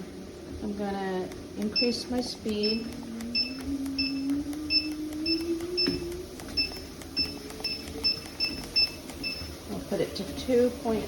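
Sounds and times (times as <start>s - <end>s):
treadmill belt motor whine: 0.0s - 11.0s
treadmill short high beeps: 1.7s - 9.6s.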